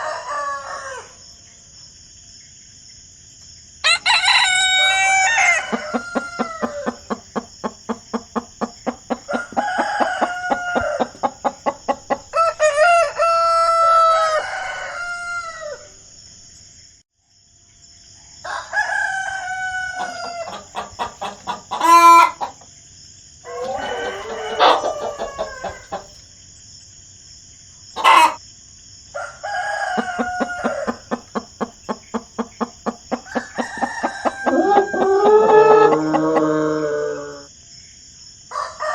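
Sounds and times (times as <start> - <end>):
roosters crowing: 3.9 - 15.7, 18.8 - 22.6, 23.5 - 26.2, 28.0 - 28.4, 29.4 - 37.4
hens clucking: 5.4 - 12.8, 20.0 - 22.6, 23.5 - 26.2, 28.0 - 28.4, 29.9 - 37.2.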